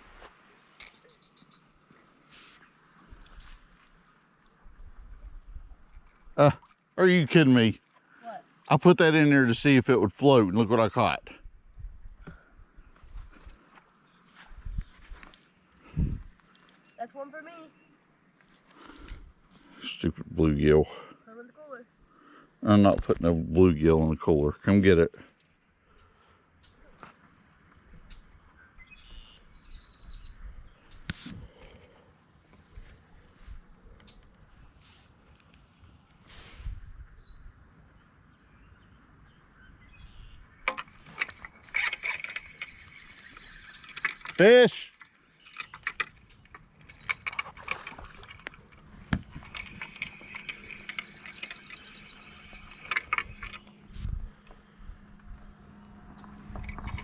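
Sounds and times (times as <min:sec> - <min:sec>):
songbirds chirping: 0:00.0 - 0:11.6, 0:12.2 - 0:57.0
low steady hum: 0:00.0 - 0:57.0
sharp clicks: 0:40.6 - 0:53.8.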